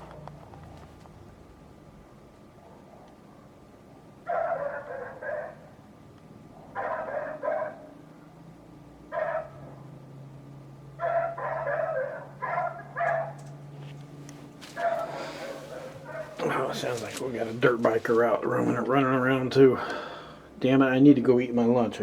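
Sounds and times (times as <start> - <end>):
dog barking: 2.6 - 3.5, 4.2 - 5.8, 6.5 - 8.0, 9.1 - 9.8, 11.0 - 13.5, 14.6 - 17.0.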